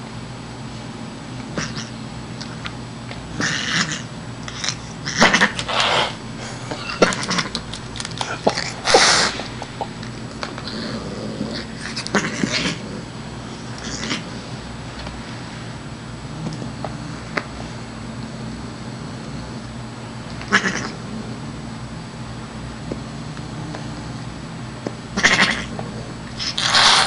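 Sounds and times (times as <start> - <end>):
cat hissing: 1.6 - 1.9, 3.4 - 13.1, 13.8 - 14.4, 20.5 - 21.0, 25.2 - 27.0.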